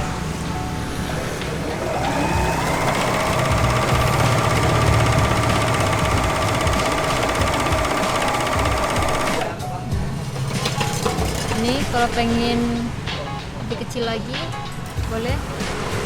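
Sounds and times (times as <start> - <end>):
overlocker motor whine: 0.0 - 9.4
fast ticking of stitches: 1.5 - 9.6.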